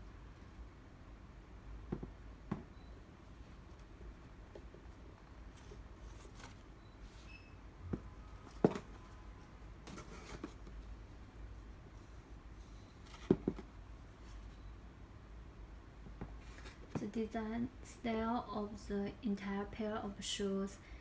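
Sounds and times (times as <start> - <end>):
low steady hum: 0.0 - 21.0
sneakers knocking and tapping: 1.8 - 2.8, 7.9 - 9.0, 13.2 - 13.7.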